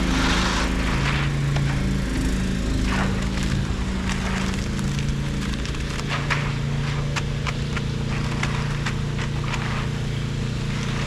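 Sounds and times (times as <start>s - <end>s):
engine running steadily: 0.0s - 11.0s
sharp clicks and knocks: 2.8s - 10.1s.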